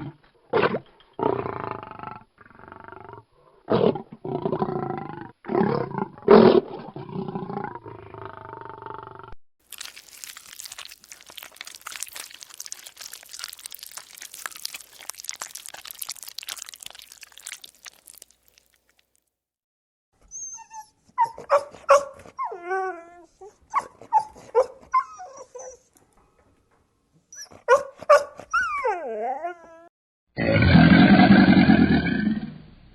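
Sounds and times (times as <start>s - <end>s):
small dog barking: 21.5s - 22.2s, 27.6s - 28.4s
dog whimpering: 22.3s - 25.9s, 27.3s - 29.9s.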